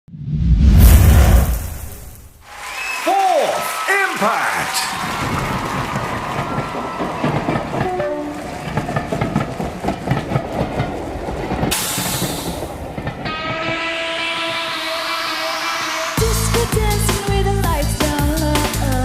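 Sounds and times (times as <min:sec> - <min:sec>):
train rattling along rails: 0:05.1 - 0:16.2
loud hiss: 0:11.7 - 0:12.8
music: 0:13.3 - 0:19.0.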